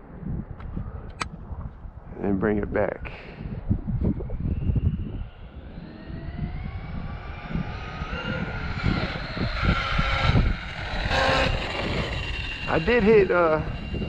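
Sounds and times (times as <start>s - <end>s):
toy car motor whining: 4.7s - 14.0s.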